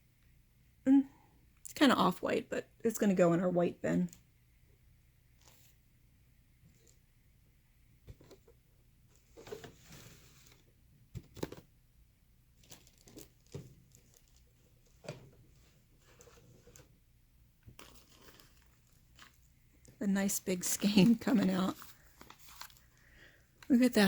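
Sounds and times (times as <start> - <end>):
yarn rustling and crinkling: 12.6 - 17.0, 17.7 - 20.0, 20.6 - 23.8.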